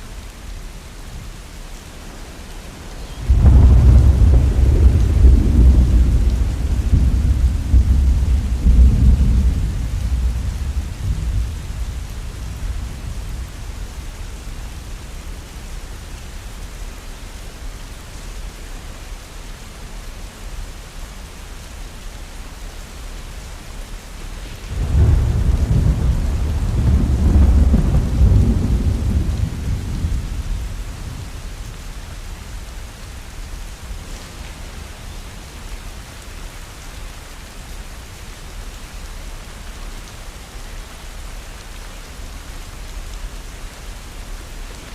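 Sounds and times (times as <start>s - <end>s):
steady rain: 0.0s - 44.9s
thunder rumbling: 2.7s - 14.1s, 24.6s - 33.0s.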